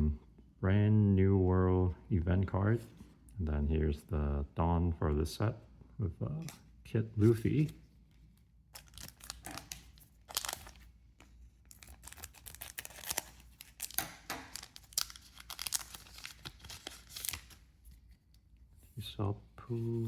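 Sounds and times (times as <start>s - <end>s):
wrapper tearing and crinkling: 8.8s - 10.9s, 11.6s - 17.6s.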